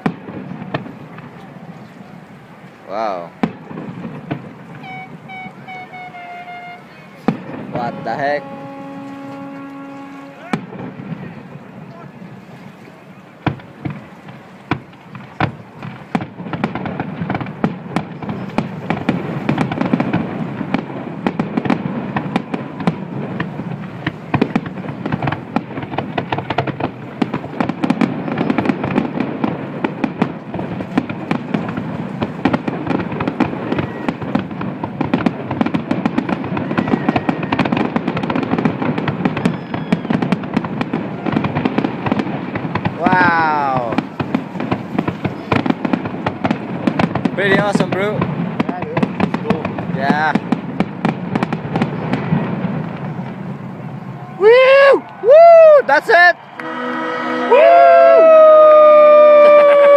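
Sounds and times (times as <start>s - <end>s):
crackle of rapid firework pops: 0.0s - 2.1s, 3.2s - 5.0s, 13.4s - 53.5s
firework bangs: 0.0s - 59.9s.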